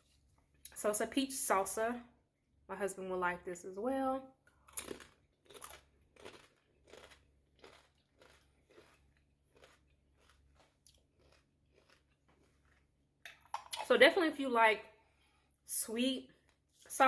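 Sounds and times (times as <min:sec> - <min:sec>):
person chewing crunchy chip: 0:04.5 - 0:13.9.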